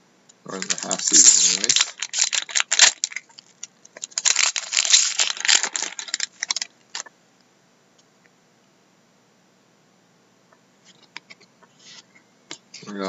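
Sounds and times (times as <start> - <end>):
packaging rustling and crinkling: 0.5 - 7.1.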